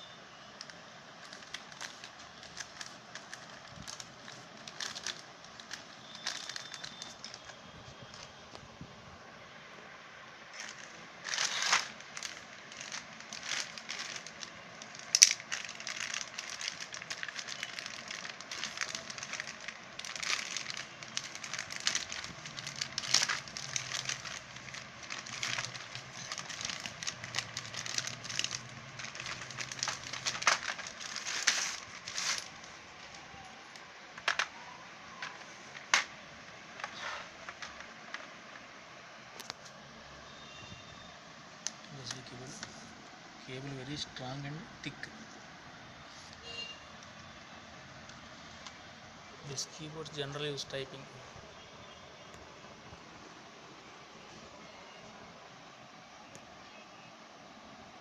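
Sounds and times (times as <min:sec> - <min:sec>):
plastic packaging crinkling: 0:00.4 - 0:08.6, 0:10.5 - 0:38.8.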